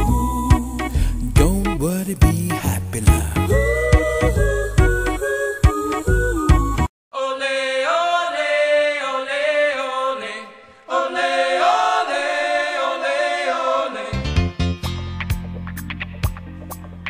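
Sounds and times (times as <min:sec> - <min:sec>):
music track: 0:00.0 - 0:06.9, 0:14.1 - 0:17.0
wordless choir-like singing: 0:03.5 - 0:06.5, 0:07.1 - 0:14.3.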